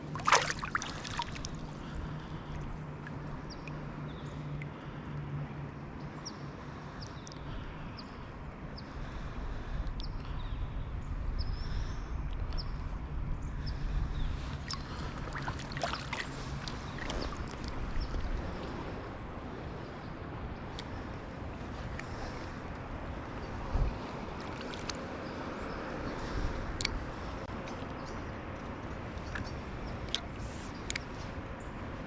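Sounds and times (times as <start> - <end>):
river water flowing: 0.0 - 7.0, 14.3 - 32.0.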